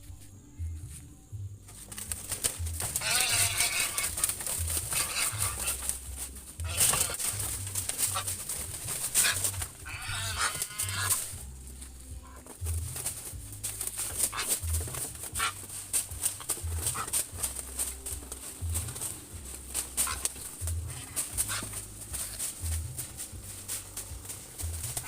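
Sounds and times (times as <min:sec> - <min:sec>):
background music with low beat: 0:00.0 - 0:25.0
harsh animal cries: 0:02.8 - 0:06.0, 0:06.6 - 0:11.4, 0:14.0 - 0:22.5.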